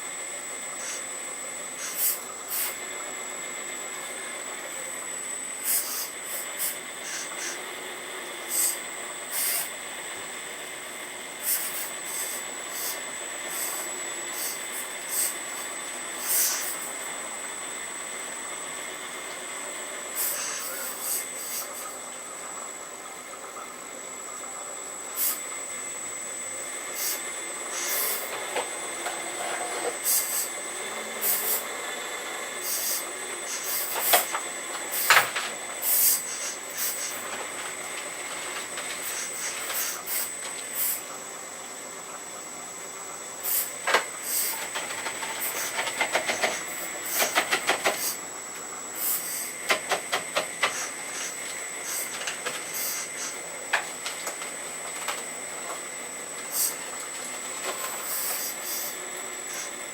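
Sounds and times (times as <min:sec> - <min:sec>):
hydraulic pump whine: 0:00.0 - 0:59.9
sharp clicks and rattling clatters: 0:43.9 - 0:48.1.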